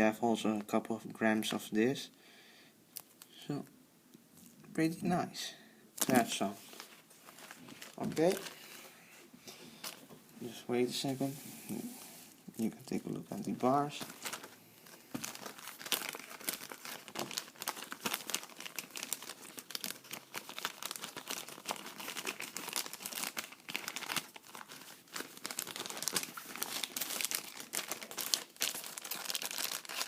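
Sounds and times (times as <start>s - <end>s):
plastic packaging crinkling: 6.0s - 9.0s, 12.9s - 30.0s
plastic tearing: 14.0s - 30.0s.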